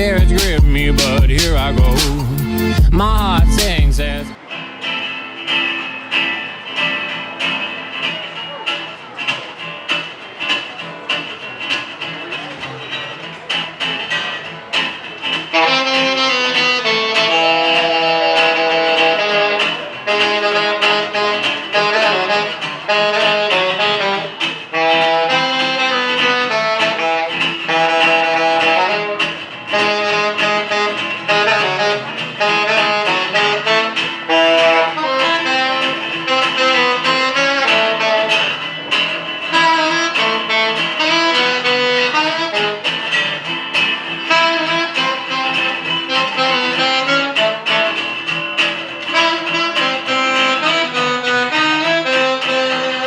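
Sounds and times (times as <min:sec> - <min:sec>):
saxophone-like horn melody: 0:00.0 - 0:04.4, 0:15.5 - 0:53.0
live band playing instrumental: 0:00.0 - 0:53.0.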